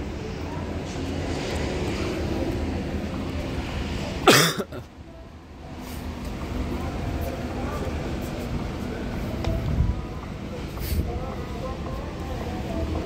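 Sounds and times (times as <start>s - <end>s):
person coughing: 4.2s - 4.8s.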